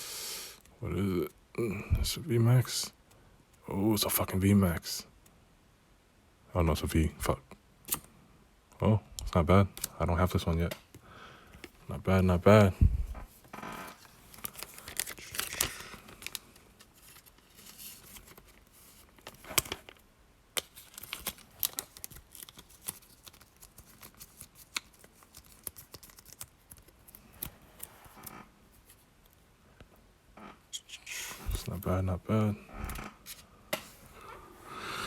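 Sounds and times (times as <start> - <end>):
card packaging rustling: 13.9 - 20.0, 20.6 - 29.0.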